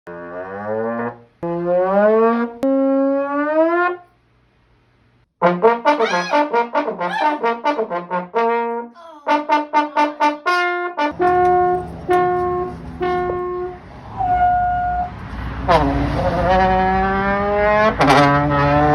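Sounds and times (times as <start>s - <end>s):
trombone-like brass notes: 5.4s - 18.9s.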